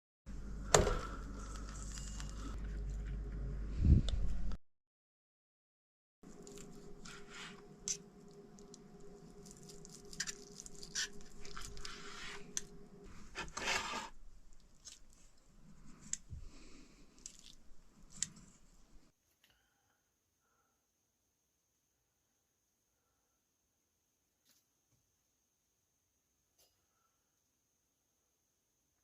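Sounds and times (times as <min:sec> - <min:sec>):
steady hum: 0:06.3 - 0:14.5
ingredients squishing and crunching: 0:06.3 - 0:16.3, 0:17.0 - 0:18.8.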